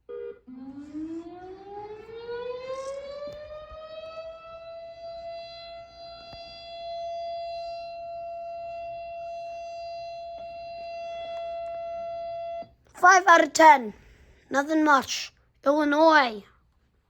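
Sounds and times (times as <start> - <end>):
civil defense siren: 0.0 - 12.9.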